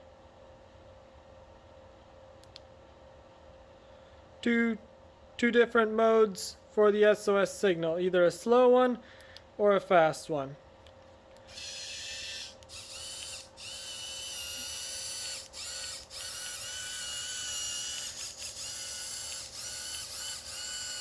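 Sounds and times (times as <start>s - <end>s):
small electric motor whirring: 11.4s - 21.0s.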